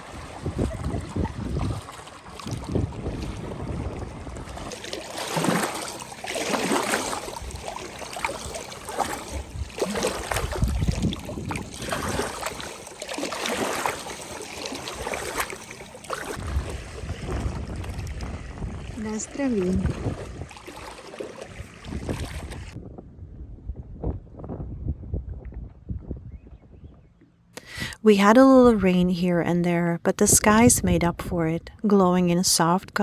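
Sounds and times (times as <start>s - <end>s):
lake water lapping and splashing: 0.0s - 22.8s
low water slap: 0.0s - 22.8s.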